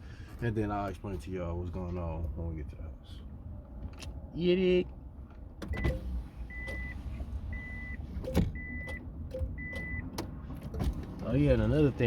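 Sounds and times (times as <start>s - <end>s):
car warning chime beeping: 5.7s - 10.1s.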